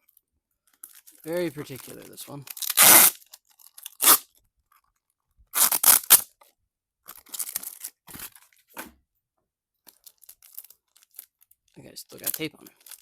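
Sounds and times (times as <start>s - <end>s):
packaging tape ripping: 2.5s - 4.3s, 5.5s - 6.3s.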